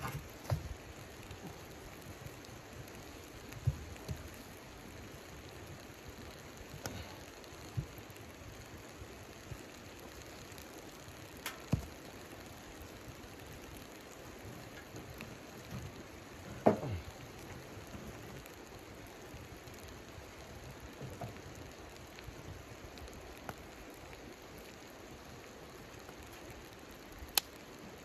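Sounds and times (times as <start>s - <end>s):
faint ticks: 0.0s - 16.0s
rain pattering on a surface: 0.0s - 28.0s.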